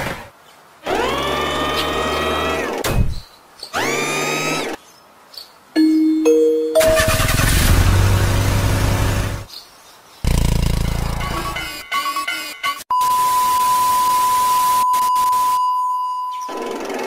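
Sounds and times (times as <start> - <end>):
engine-like rumbling: 6.8 - 9.5.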